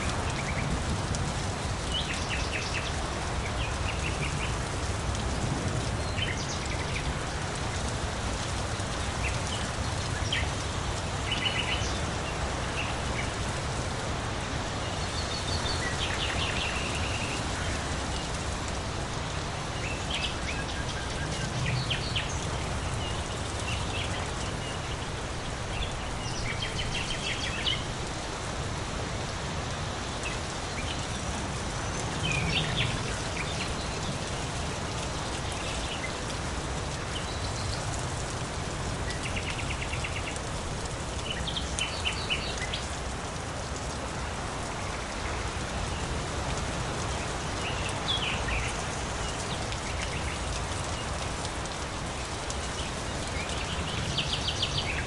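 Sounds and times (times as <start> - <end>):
steady rain falling: 0.0 - 55.0.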